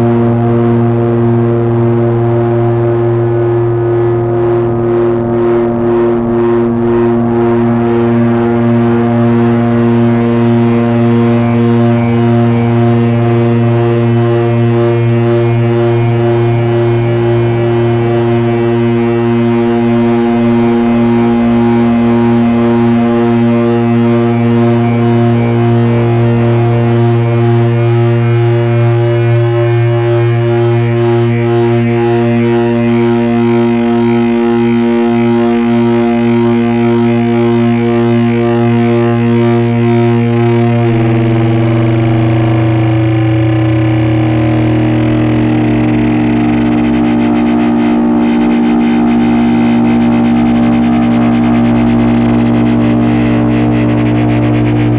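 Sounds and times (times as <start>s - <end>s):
buzzing low hum: 0.0s - 54.9s
electronic drone of held tones: 0.0s - 54.9s.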